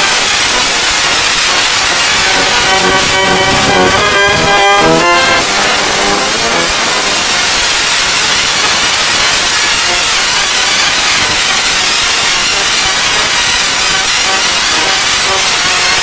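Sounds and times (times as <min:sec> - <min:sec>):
distorted wheezing hiss: 0:00.1 - 0:10.1.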